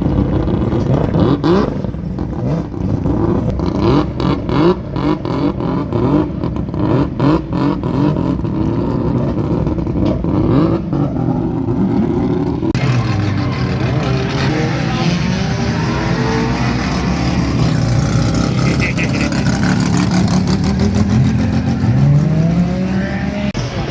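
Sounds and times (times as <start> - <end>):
car engine revving: 0.0 - 23.9.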